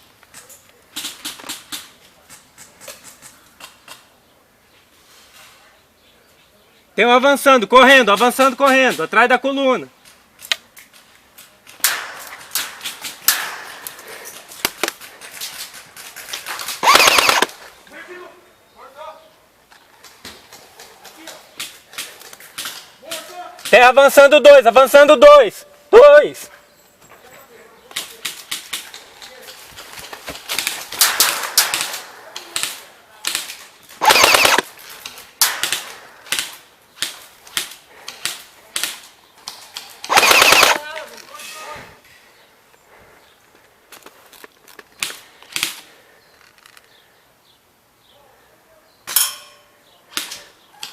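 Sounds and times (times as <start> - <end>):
airsoft gunfire: 16.8 - 17.6, 30.6 - 34.7, 35.4 - 39.0, 40.0 - 41.0.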